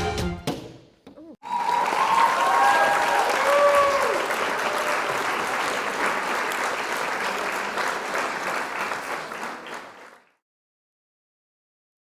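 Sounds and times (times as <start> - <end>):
crowd applause: 1.4 - 10.4.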